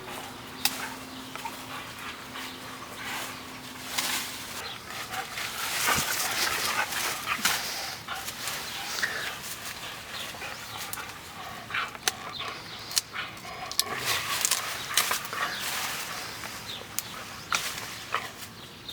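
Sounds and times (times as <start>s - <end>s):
dog chewing branches: 0.0s - 18.9s
rustling leaves: 0.0s - 18.9s
twigs snapping: 3.8s - 18.6s.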